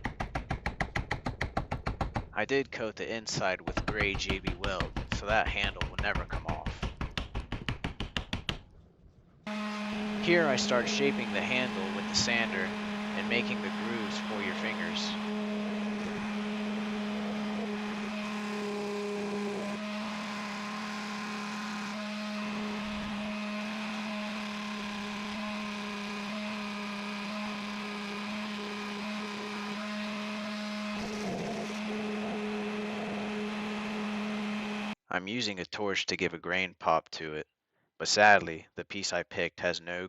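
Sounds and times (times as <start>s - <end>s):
electric sander on wood: 9.5s - 35.0s.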